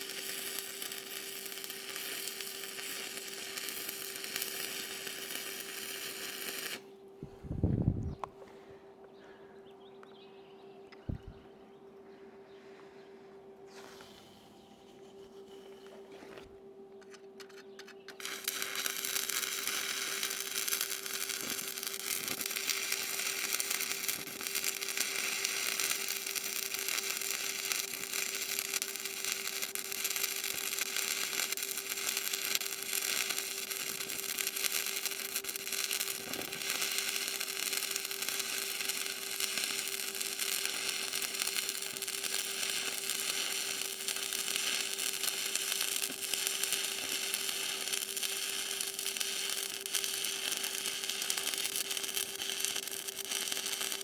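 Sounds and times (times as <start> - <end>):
welding arc crackling: 0.0 - 6.9, 18.1 - 54.0
constant low hum: 0.0 - 53.9.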